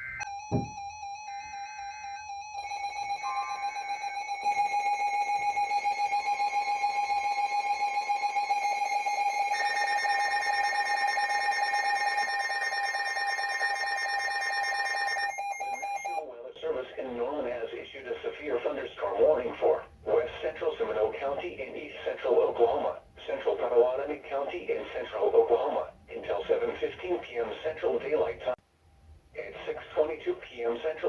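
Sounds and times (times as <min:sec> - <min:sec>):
higher alarm tone: 0:00.0 - 0:16.2
pulsing electronic alarm tone: 0:00.0 - 0:16.2.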